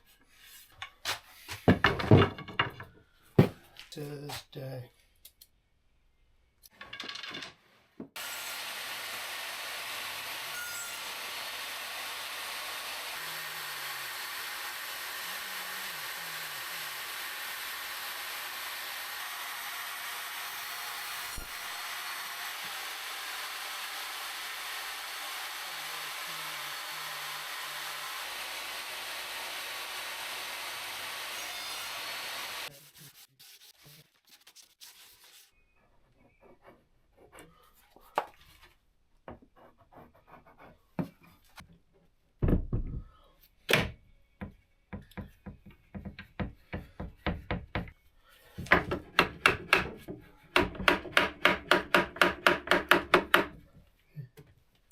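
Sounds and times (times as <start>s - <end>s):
woodworking power tool: 8.1s - 33.3s, 48.6s - 53.5s.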